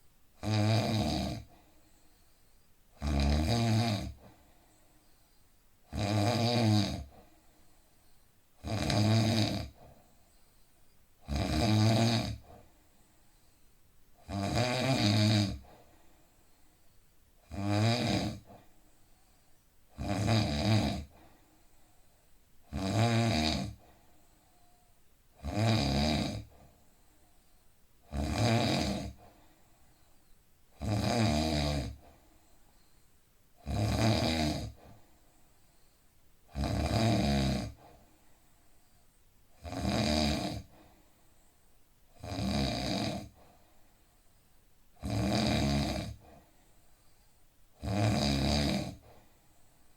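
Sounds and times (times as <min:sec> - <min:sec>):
man snoring: 0:00.4 - 0:01.5, 0:03.0 - 0:04.2, 0:05.9 - 0:07.2, 0:08.6 - 0:09.9, 0:11.2 - 0:12.6, 0:14.2 - 0:15.7, 0:17.4 - 0:18.6, 0:20.0 - 0:21.2, 0:22.7 - 0:23.8, 0:25.4 - 0:26.5, 0:28.1 - 0:29.2, 0:30.8 - 0:32.0, 0:33.6 - 0:34.9, 0:36.5 - 0:37.8, 0:39.6 - 0:40.7, 0:42.2 - 0:43.4, 0:45.0 - 0:46.3, 0:47.8 - 0:49.1.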